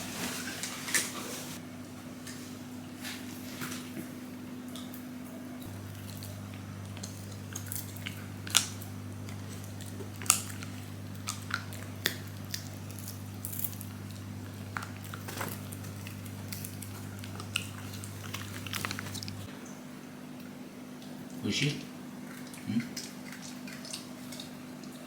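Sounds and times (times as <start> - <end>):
dog chewing: 4.7 - 19.5, 22.2 - 25.0.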